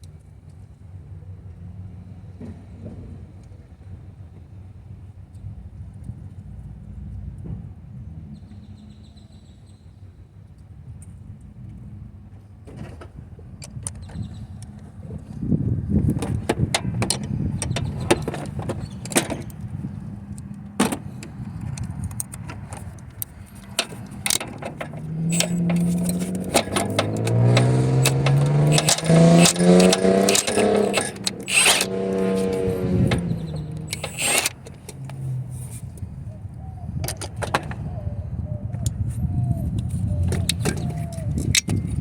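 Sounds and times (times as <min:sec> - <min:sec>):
vehicle engine running: 0:14.1 - 0:36.6
hand tools clinking on metal: 0:20.9 - 0:35.8.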